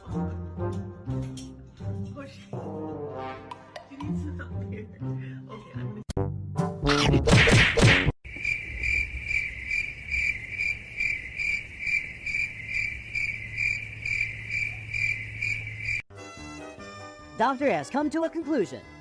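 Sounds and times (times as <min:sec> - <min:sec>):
cricket chirping: 0:08.2 - 0:16.0.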